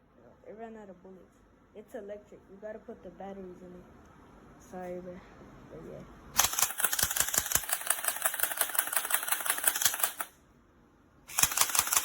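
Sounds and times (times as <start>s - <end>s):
airsoft pistol rattling full auto: 6.4s - 10.4s, 11.3s - 12.0s.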